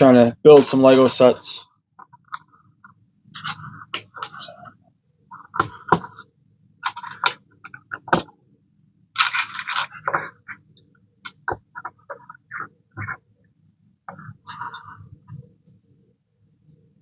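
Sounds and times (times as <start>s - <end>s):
plastic bricks clicking: 9.2s - 10.6s.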